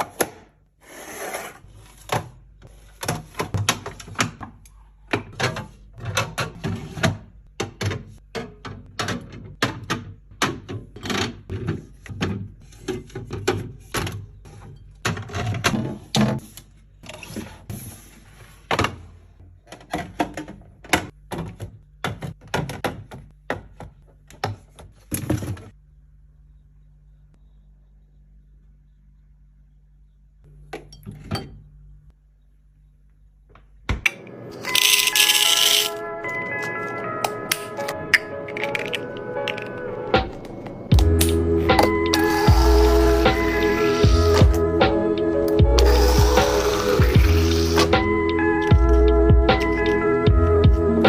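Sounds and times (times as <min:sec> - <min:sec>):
containers knocking and clicking: 0:37.2 - 0:42.2.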